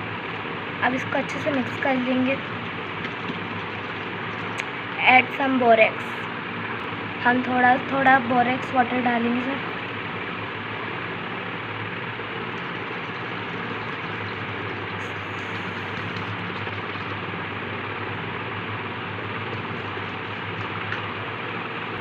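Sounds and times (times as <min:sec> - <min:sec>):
low hum: 0:08.7 - 0:22.0.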